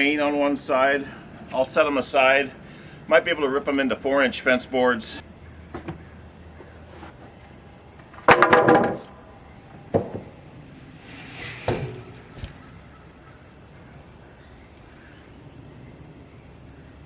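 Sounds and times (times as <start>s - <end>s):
wooden boards clattering: 8.2s - 9.1s, 11.4s - 12.5s.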